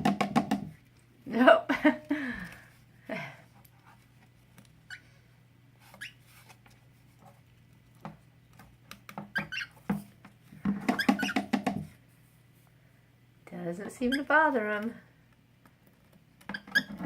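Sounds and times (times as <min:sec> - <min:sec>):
cockatiels chirping: 0:09.3 - 0:09.8, 0:11.0 - 0:11.4.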